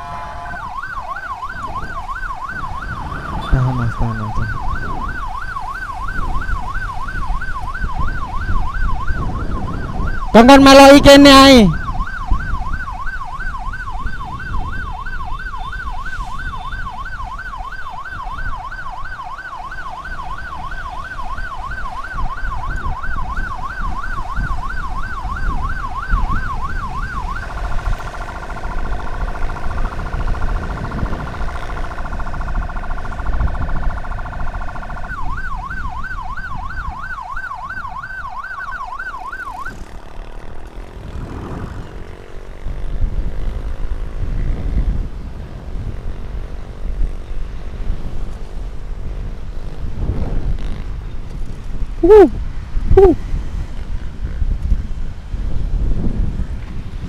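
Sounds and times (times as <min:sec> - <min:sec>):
multi-note horn tone: 0:00.0 - 0:00.8
emergency siren yelping: 0:00.0 - 0:41.2, 0:52.0 - 0:53.2
vehicle road and engine rumble: 0:00.0 - 0:57.0.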